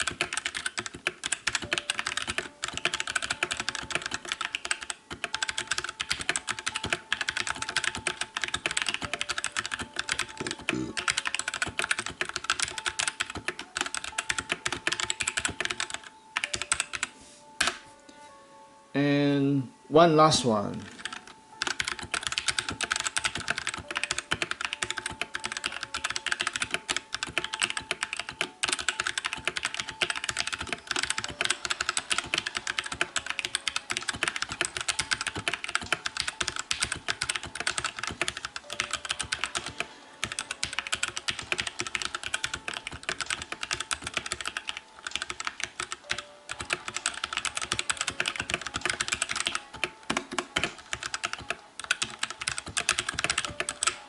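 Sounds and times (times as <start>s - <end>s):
fast typing on mechanical keyboard: 0.0s - 17.1s, 20.8s - 54.0s.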